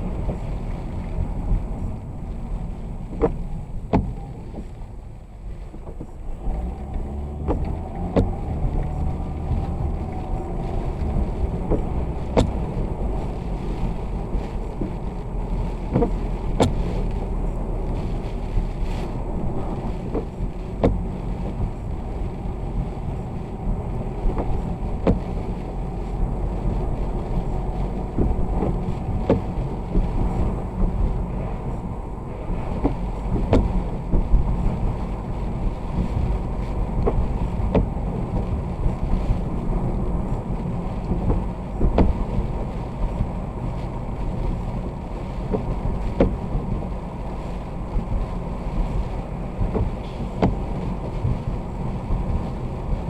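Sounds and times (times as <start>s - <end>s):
road and wind noise: 0.0s - 53.0s.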